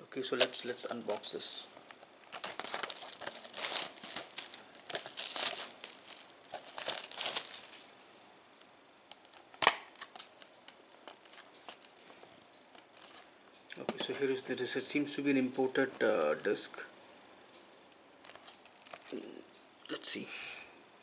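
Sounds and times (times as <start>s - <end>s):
plastic wrap tearing and crinkling: 0.4s - 8.0s.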